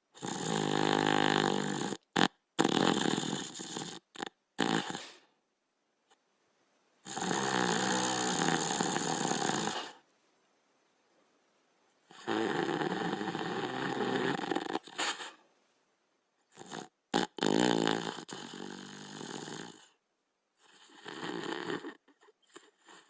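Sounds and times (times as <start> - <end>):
dog snoring: 0.1 - 5.3, 7.0 - 10.0, 12.1 - 15.4, 16.4 - 20.0, 20.6 - 23.0.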